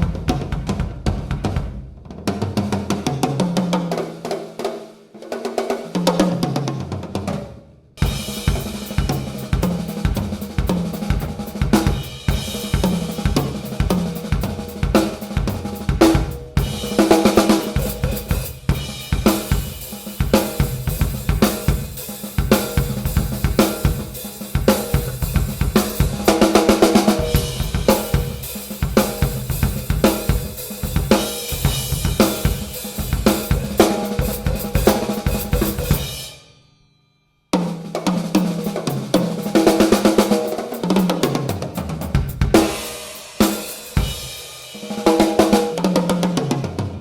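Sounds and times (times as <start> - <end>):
bass drum: 0.0 - 1.9, 8.0 - 36.1, 41.6 - 44.2
snare drum: 8.0 - 36.1, 38.1 - 47.0
cymbals: 8.0 - 45.8.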